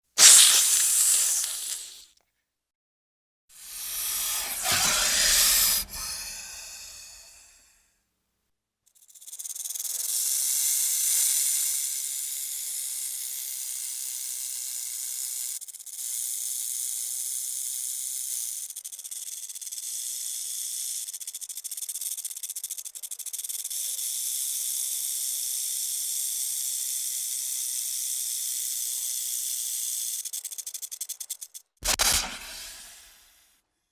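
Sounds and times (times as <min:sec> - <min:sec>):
snake hissing: 0:00.2 - 0:02.1, 0:03.6 - 0:07.6.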